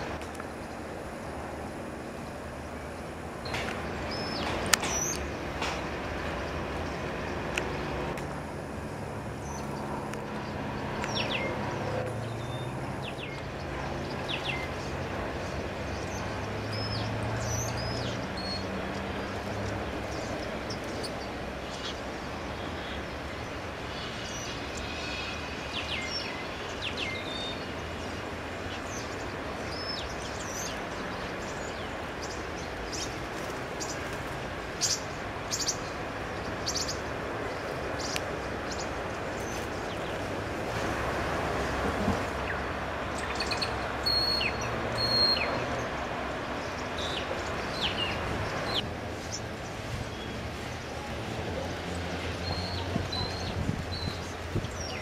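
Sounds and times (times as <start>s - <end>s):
humming drone: 0.0s - 28.1s
bird chirps: 43.2s - 45.7s.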